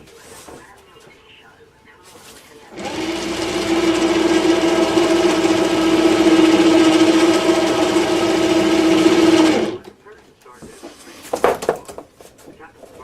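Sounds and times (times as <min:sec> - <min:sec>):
power tool motor whining: 0:02.7 - 0:09.8.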